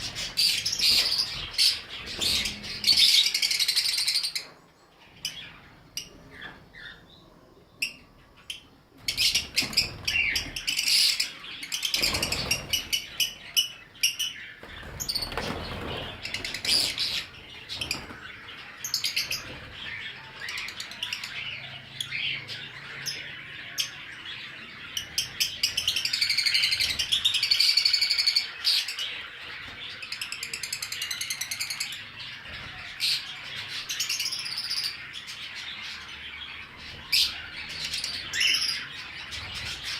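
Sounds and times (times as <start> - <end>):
cage birds chirping: 0.0 - 39.9.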